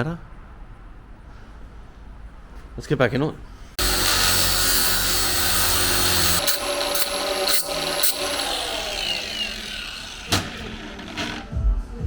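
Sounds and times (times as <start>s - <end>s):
power tool grinding: 3.8s - 11.6s.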